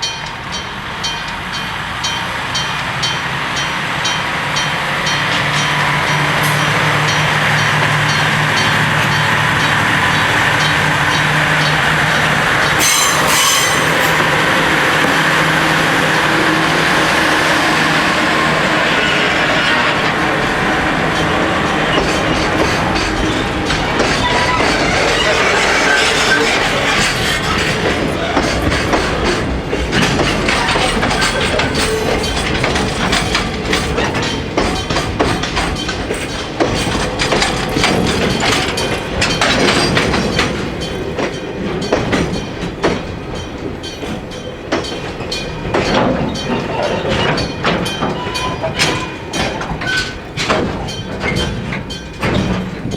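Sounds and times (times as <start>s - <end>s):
crossing warning bell ringing: 0.0s - 52.9s
train engine hum: 0.0s - 52.9s
train wheels clattering over rails: 0.0s - 52.9s.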